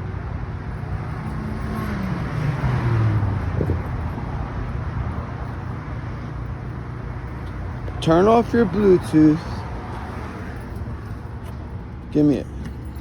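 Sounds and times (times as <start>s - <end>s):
car engine rumble while driving: 0.0s - 13.0s.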